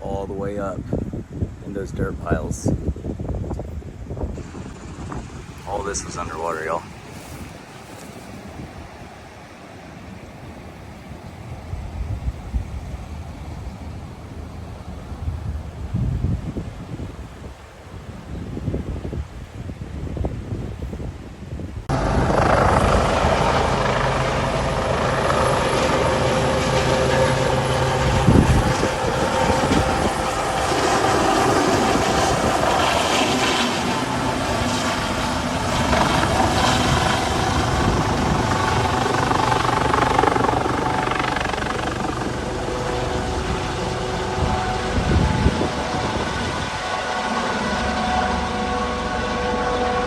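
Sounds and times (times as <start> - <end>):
helicopter engine and rotor: 4.4 - 8.5, 21.9 - 50.0.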